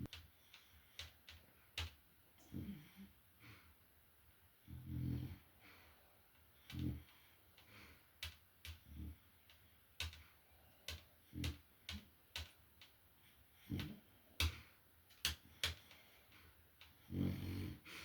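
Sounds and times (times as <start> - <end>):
sharp irregular clicks: 0.0 - 2.0, 6.3 - 13.0, 13.6 - 17.0
dog snoring softly: 17.0 - 17.8.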